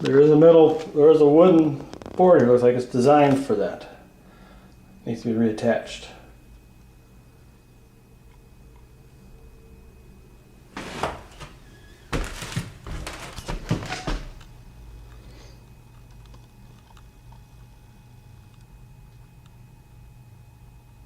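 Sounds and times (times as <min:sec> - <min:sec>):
faint low hum: 0:00.0 - 0:21.0
wood knocking and scraping: 0:10.8 - 0:14.4.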